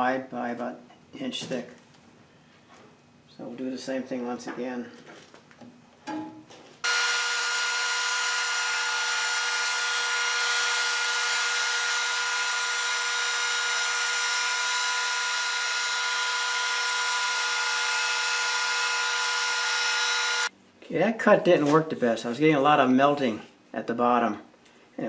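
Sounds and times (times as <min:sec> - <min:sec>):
band saw cutting plastic: 0:06.8 - 0:20.5.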